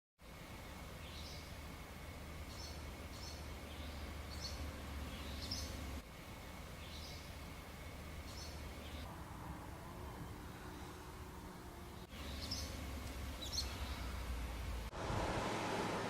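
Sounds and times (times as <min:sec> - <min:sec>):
small bird chirping: 0:02.5 - 0:05.8, 0:12.0 - 0:12.8, 0:13.4 - 0:14.2.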